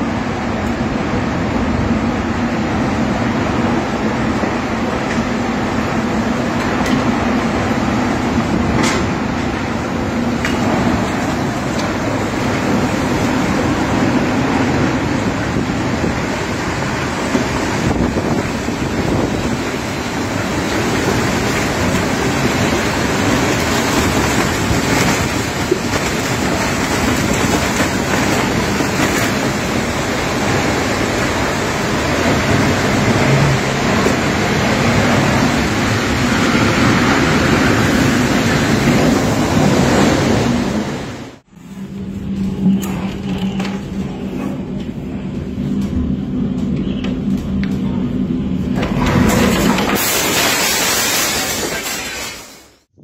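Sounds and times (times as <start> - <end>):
wind rushing across microphone: 0.0 - 41.6.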